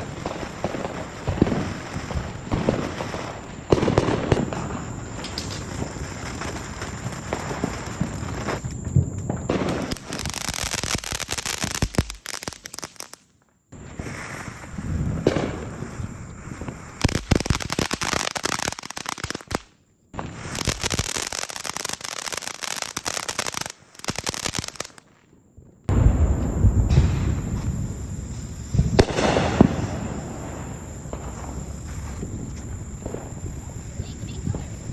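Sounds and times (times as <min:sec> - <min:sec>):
fireworks crackling and popping: 0:00.0 - 0:34.9.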